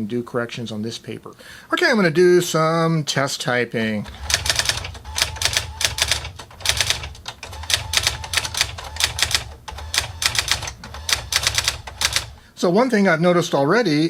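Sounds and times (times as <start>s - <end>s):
typewriter print-hammer strikes: 4.1s - 12.4s.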